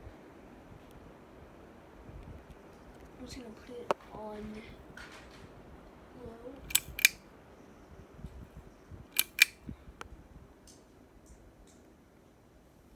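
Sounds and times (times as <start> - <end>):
sharp clicks: 6.6 - 7.2, 9.2 - 9.6.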